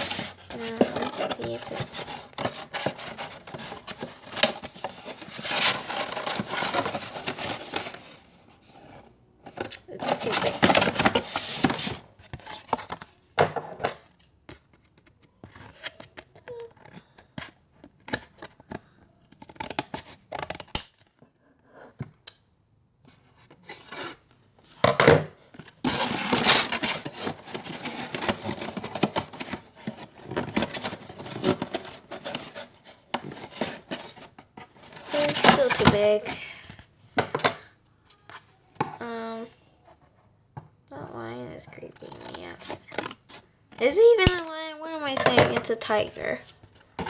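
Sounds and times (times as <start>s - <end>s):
scissors cutting cardboard: 0.0s - 13.0s, 19.2s - 21.0s, 25.8s - 36.4s, 41.7s - 44.4s
cardboard scraping and rustling: 0.0s - 14.2s, 23.1s - 36.6s, 41.6s - 44.4s.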